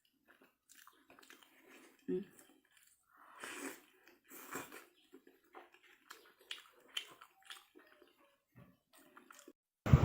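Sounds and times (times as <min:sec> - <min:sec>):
person chewing: 0:00.0 - 0:09.6.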